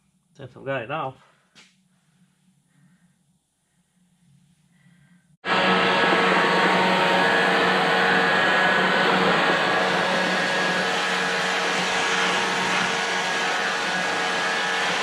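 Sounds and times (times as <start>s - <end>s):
motor hum: 5.4s - 15.0s.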